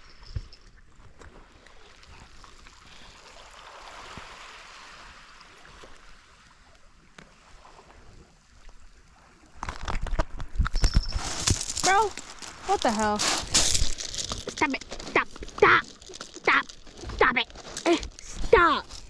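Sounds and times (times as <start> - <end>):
small waves washing over rocks: 1.3 - 6.7, 11.1 - 19.0.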